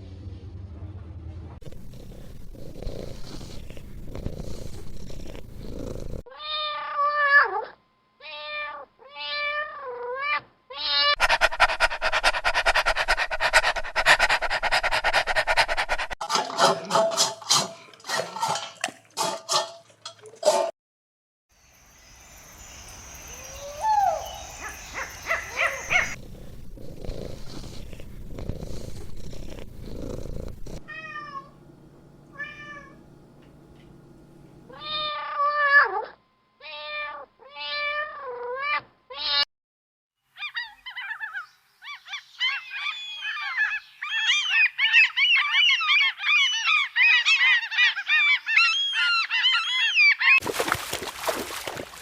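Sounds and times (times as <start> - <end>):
cat purring: 1.6 - 6.2, 25.5 - 31.6
cat meowing: 30.9 - 31.5, 32.4 - 33.0.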